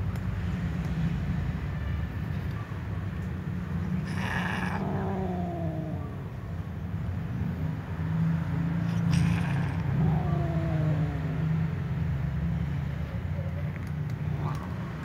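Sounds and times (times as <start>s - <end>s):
cats meowing loudly: 4.0s - 6.4s, 8.9s - 11.6s.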